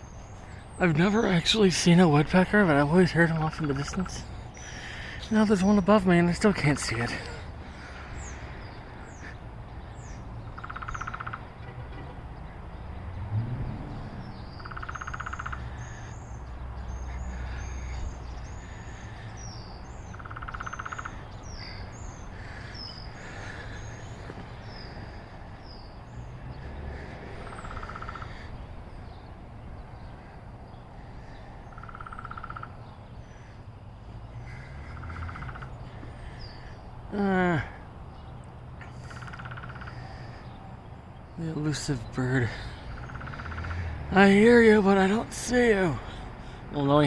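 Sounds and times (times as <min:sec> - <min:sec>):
small birds chirping: 0:00.0 - 0:47.0
woodpecker drumming: 0:00.9 - 0:09.4, 0:10.1 - 0:11.5, 0:14.6 - 0:24.4, 0:27.4 - 0:28.5, 0:31.6 - 0:33.4, 0:34.4 - 0:37.6, 0:38.8 - 0:40.2, 0:42.8 - 0:46.0.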